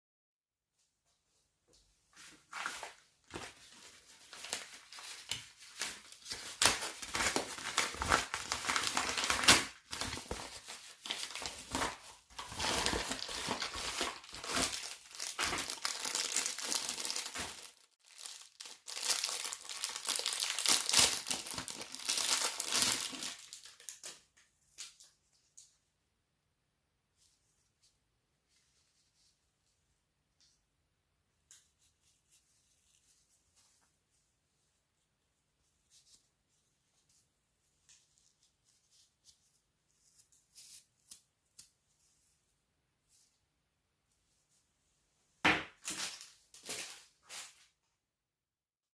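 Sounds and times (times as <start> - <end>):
packaging crinkling and tearing: 2.5 - 24.2, 45.8 - 47.6.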